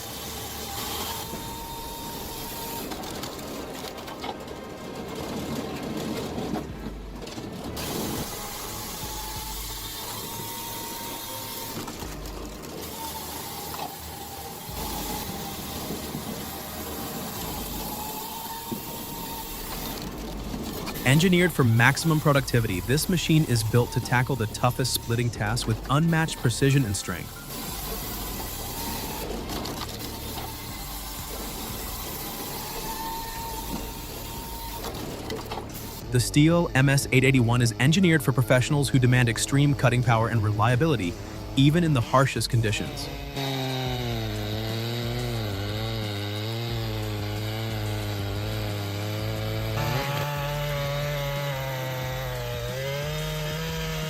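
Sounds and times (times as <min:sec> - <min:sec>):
firewood processor clattering: 0:00.0 - 0:37.0, 0:42.4 - 0:54.0
machinery hissing: 0:07.8 - 0:37.0.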